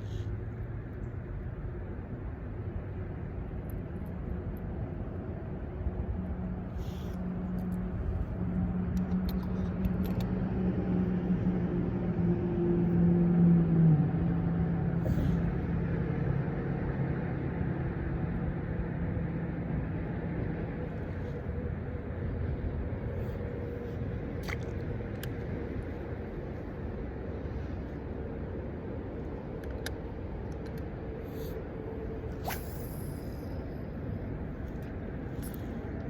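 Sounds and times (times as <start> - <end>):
engine droning: 0.0 - 36.0.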